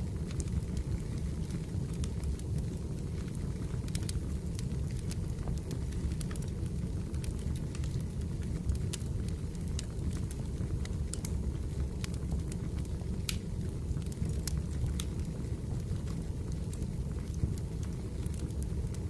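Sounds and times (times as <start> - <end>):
fire crackling and popping: 0.0 - 19.0
low rumble of flames: 0.0 - 19.0.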